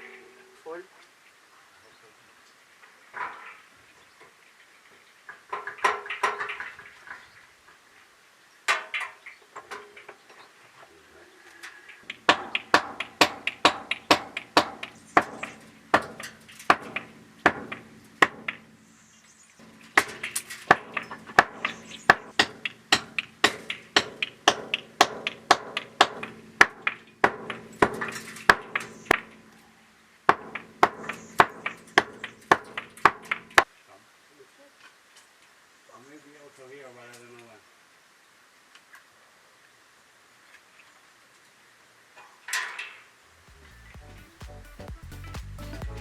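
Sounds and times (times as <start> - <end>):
sharp metallic strikes: 19.6 - 26.3.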